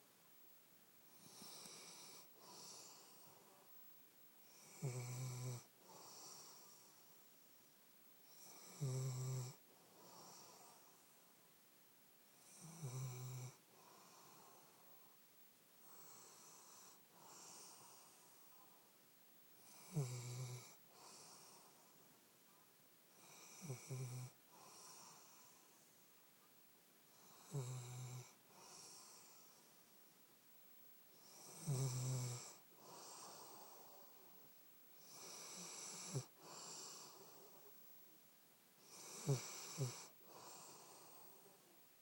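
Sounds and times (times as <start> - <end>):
dog snoring: 1.1 - 3.8, 4.4 - 7.1, 8.2 - 11.0, 12.4 - 14.8, 15.8 - 18.6, 19.6 - 21.9, 23.1 - 25.8, 27.1 - 29.6, 31.1 - 34.2, 35.0 - 37.8, 38.8 - 41.7.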